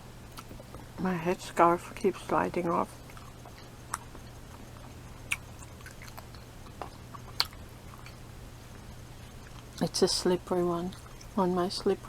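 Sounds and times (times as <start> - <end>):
low steady hum: 0.0 - 12.0
person chewing: 3.0 - 9.8.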